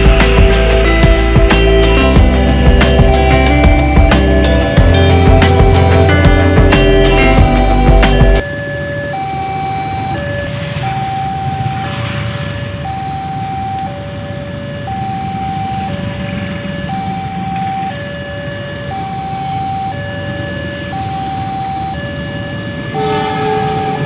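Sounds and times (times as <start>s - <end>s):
steady low rumble: 0.0s - 8.4s
level crossing alarm two tones: 0.0s - 24.0s.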